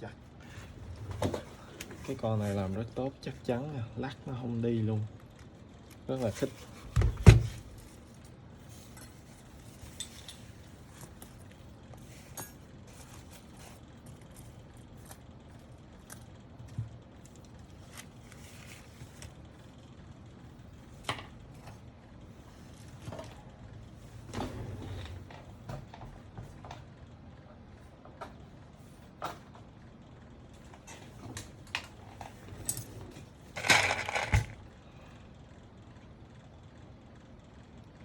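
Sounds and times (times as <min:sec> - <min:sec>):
faint steady hum: 0:00.0 - 0:38.0
handling rustle: 0:05.2 - 0:19.7, 0:32.2 - 0:34.6.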